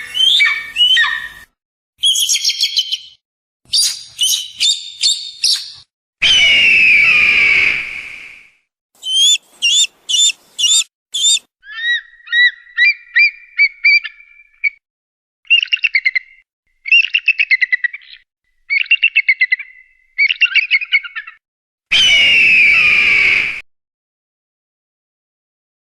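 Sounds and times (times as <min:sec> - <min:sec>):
kite whistled calls: 0:06.3 - 0:11.5
rapid chattering bird trills: 0:09.0 - 0:11.4
short rising bird notes: 0:09.0 - 0:11.4.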